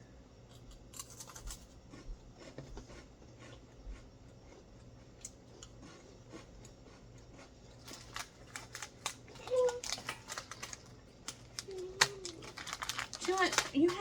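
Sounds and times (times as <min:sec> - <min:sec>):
low room hum: 0:00.0 - 0:14.0.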